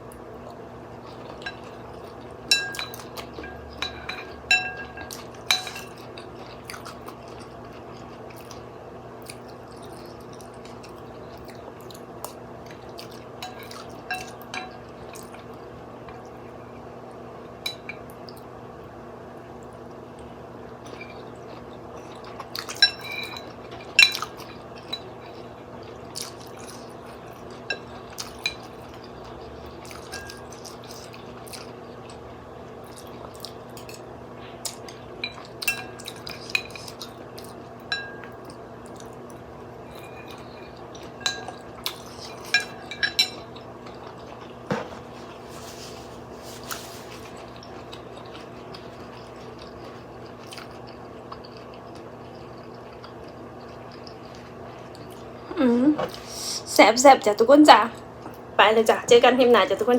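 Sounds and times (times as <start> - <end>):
metal utensils clinking on bowl: 2.5 - 6.0, 13.4 - 14.8, 42.2 - 43.4.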